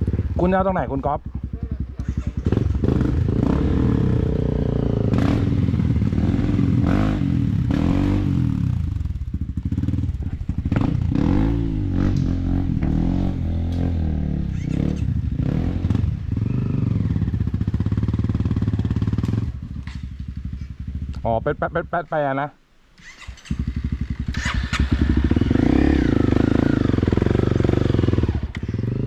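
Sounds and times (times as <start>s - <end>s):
off-road motorcycle engine revving: 0.0s - 22.3s, 23.0s - 29.0s
knocks and clatter: 10.2s - 15.1s.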